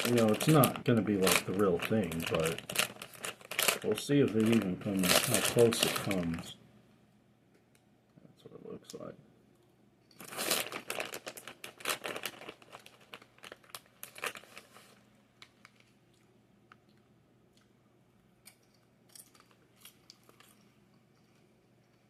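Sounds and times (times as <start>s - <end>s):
person chewing crunchy popcorn: 18.5s - 22.0s.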